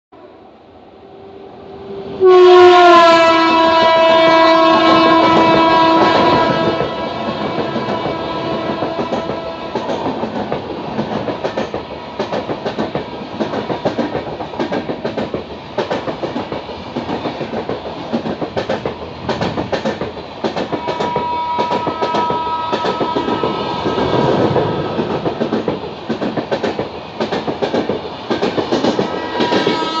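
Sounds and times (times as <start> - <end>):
train horn: 1.0 - 10.1, 20.8 - 24.9, 29.0 - 30.0
train wheels clicking over rail joints: 4.9 - 30.0.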